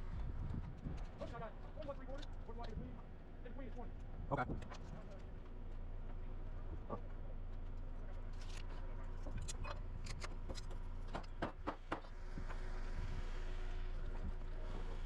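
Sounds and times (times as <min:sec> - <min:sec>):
hammer knocks on lumber: 0:11.1 - 0:12.1.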